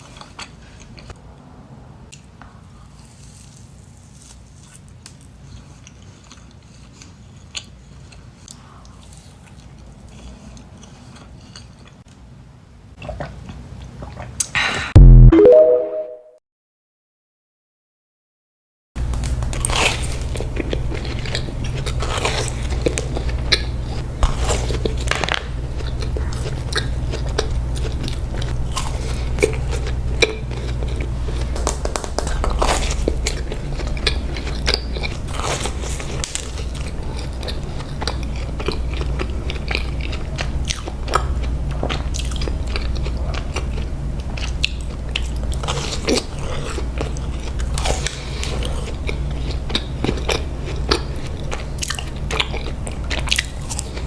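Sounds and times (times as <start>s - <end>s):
biting and chewing donuts: 2.1s - 12.3s, 19.0s - 54.0s
steady low hum: 19.0s - 41.8s.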